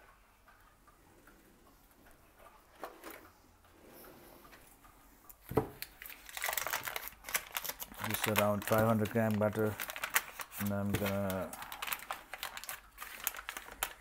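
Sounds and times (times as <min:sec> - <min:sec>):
faint kitchen ticks and knocks: 0:00.0 - 0:09.3
rapid clicks and rustling: 0:05.8 - 0:14.0.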